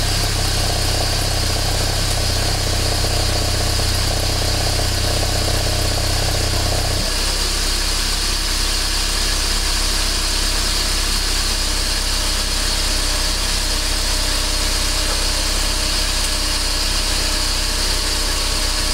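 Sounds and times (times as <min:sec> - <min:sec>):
car engine idling: 0:00.0 - 0:18.9
air pump bubbling and clattering: 0:11.6 - 0:18.9.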